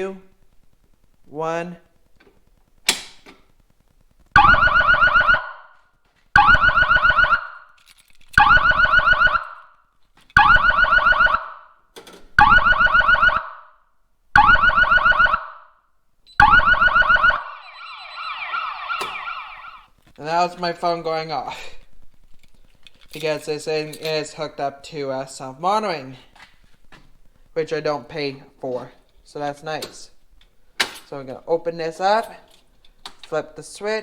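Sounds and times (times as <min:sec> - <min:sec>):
fire alarm horn blasts: 0:16.4 - 0:19.9
phone warbling alert: 0:16.4 - 0:19.9.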